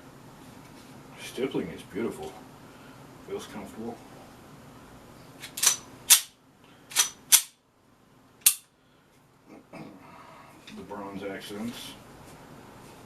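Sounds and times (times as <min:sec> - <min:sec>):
pistol slide clacking: 0:05.4 - 0:06.3, 0:06.9 - 0:07.6, 0:08.4 - 0:08.7.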